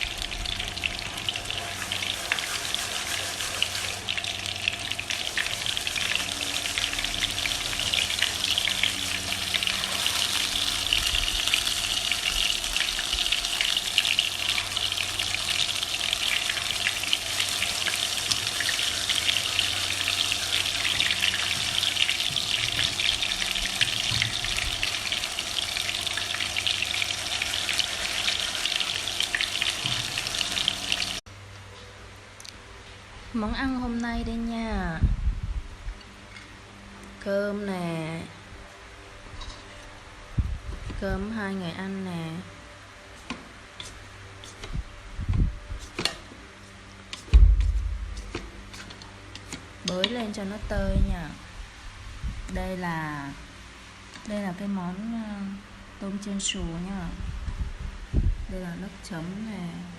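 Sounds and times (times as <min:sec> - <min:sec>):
shrimp sizzling in hot oil: 0:00.0 - 0:31.2.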